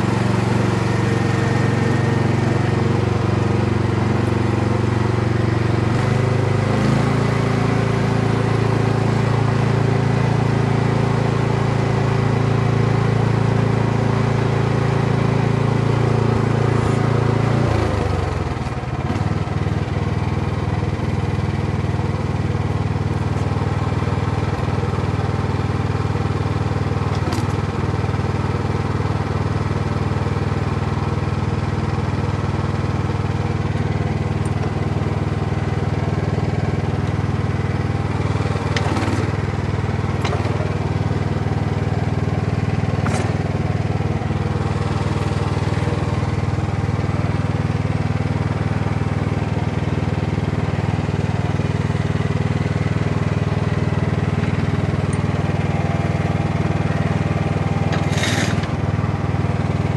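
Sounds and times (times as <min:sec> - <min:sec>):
mini dumper engine running: 0:00.0 - 0:59.9.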